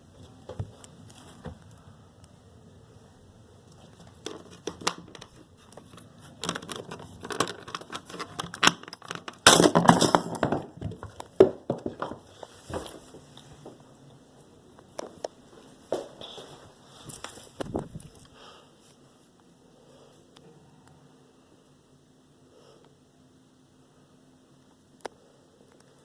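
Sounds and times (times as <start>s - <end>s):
crinkling rustling handling noise: 14.8s - 19.3s.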